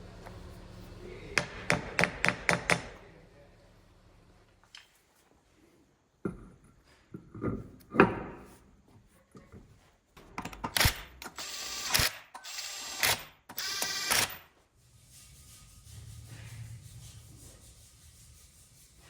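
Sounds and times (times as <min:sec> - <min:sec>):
impact wrench bursts: 0:10.7 - 0:14.4.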